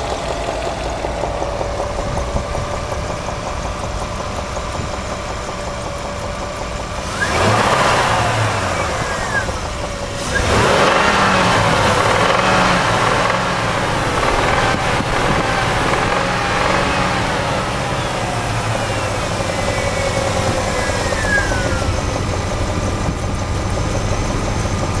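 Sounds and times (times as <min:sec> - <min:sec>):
car engine idling and revving: 0:00.0 - 0:25.0
engine knock: 0:00.0 - 0:25.0.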